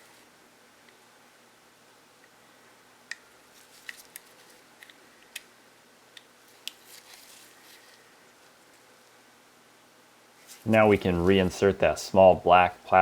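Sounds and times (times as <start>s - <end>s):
rustling of handling: 3.4s - 5.4s, 6.4s - 9.2s, 10.4s - 11.9s.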